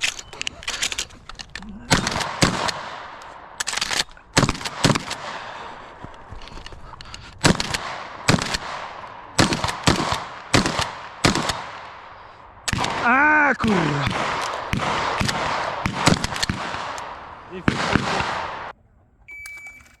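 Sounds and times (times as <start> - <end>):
shotgun shots: 1.9 - 5.7, 7.4 - 18.8.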